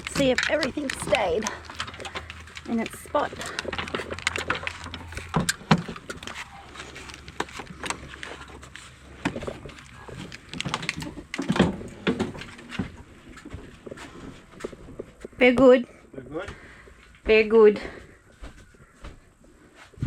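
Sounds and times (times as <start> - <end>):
person moving about clicking: 0.0 - 15.4.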